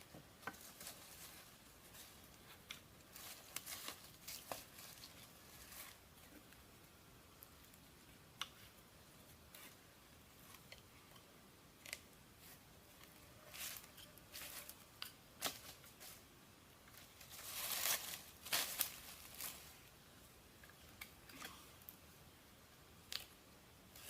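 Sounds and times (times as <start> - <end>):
rustling scrapes: 3.1 - 6.0, 17.0 - 19.8.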